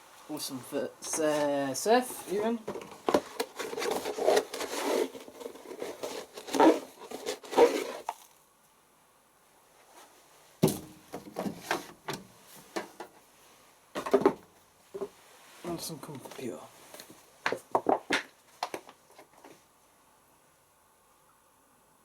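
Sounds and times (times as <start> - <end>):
washing powder scraping rustle: 3.6 - 8.4.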